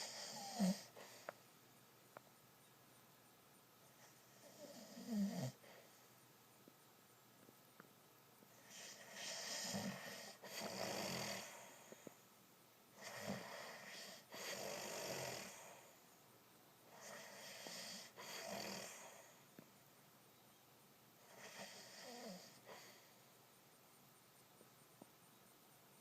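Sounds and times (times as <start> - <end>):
man snoring: 0.0 - 1.0, 4.4 - 5.6, 8.7 - 11.8, 13.0 - 15.8, 17.0 - 19.2, 21.3 - 22.7.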